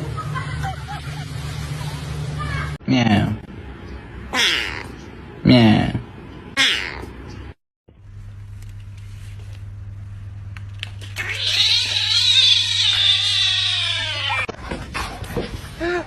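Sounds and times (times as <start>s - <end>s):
cat yowling: 4.4s - 4.9s, 6.6s - 7.1s, 11.2s - 14.5s
steady low hum: 4.9s - 13.2s.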